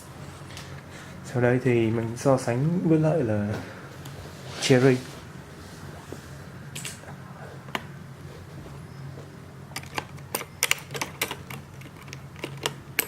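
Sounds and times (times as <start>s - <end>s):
mechanical keyboard clicks: 9.8s - 13.0s.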